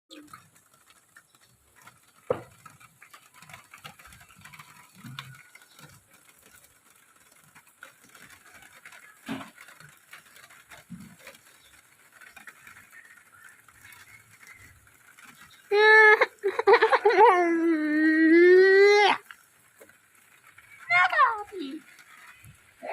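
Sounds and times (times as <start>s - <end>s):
rain drops tapping on a surface: 0.1s - 22.9s.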